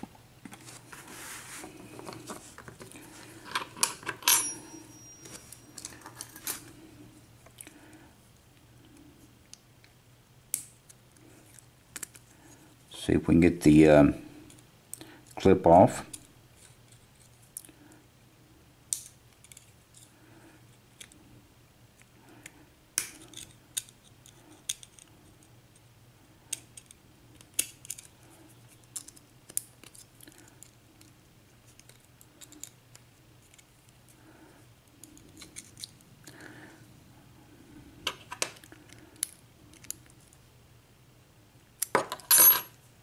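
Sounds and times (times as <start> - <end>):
small metal clicks and scrapes: 26.5 - 34.0, 35.0 - 36.0.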